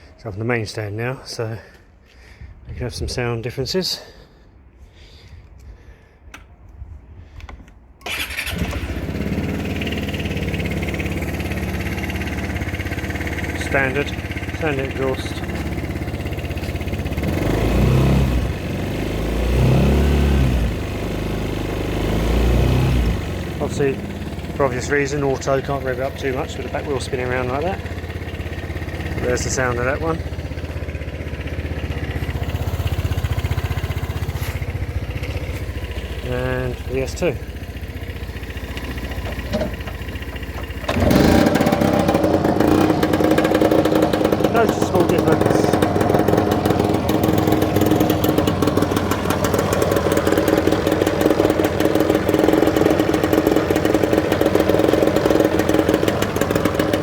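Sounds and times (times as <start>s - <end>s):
scooter engine revving: 8.0s - 57.0s.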